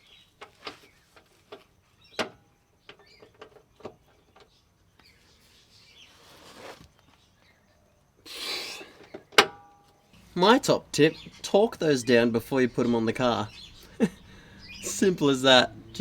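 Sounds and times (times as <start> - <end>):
faint bird chirps: 13.4 - 16.0.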